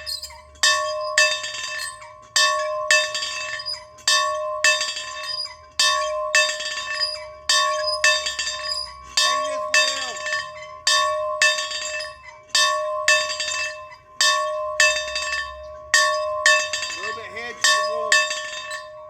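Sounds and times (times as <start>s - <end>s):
metal bell ringing: 0.0s - 19.0s.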